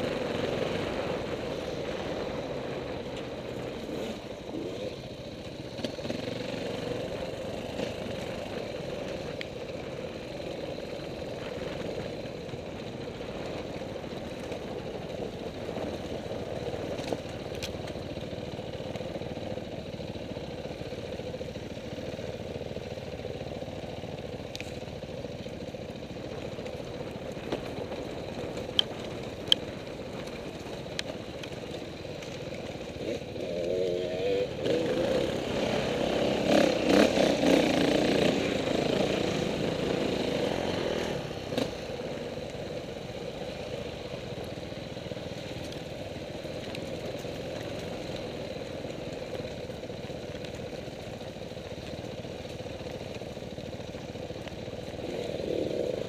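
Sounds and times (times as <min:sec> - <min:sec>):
dirt bike engine revving: 0:33.0 - 0:41.8.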